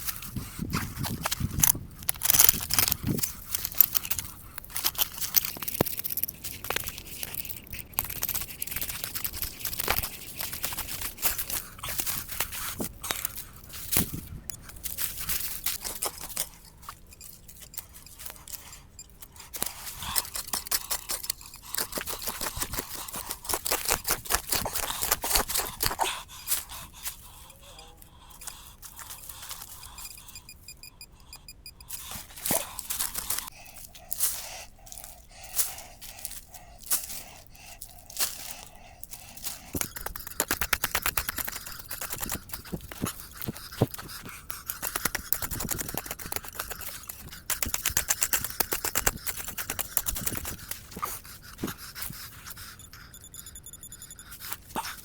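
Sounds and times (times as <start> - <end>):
dry leaves and twigs crunching: 32.0 - 44.5.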